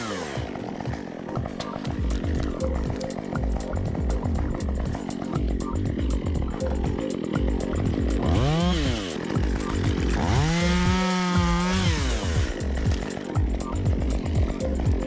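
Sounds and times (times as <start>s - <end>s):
background music with steady beat: 0.0s - 15.0s
chainsaw engine revving: 0.0s - 15.0s.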